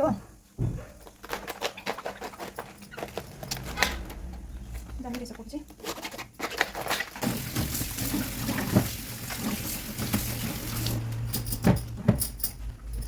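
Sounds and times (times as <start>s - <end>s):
water running from a tap: 7.2s - 11.1s.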